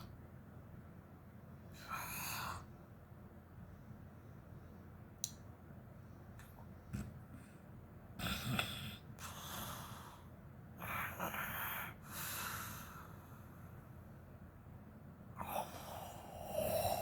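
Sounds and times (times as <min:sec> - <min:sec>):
woman snoring: 0:15.4 - 0:17.0.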